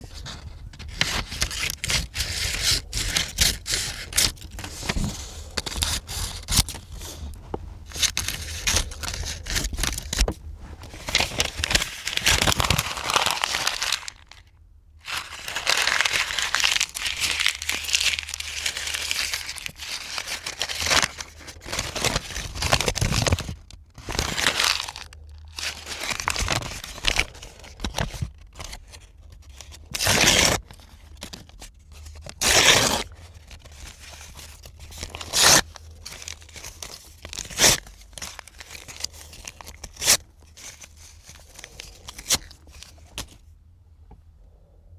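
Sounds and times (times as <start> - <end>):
paper crackling: 0.1 - 28.1
paper ripping: 0.2 - 14.4, 15.1 - 28.0, 32.4 - 43.3.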